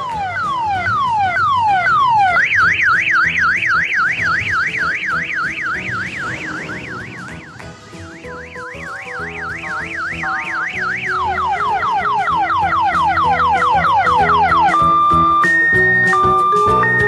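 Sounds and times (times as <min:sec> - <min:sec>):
electronic siren yelping and warbling: 0:00.0 - 0:17.0.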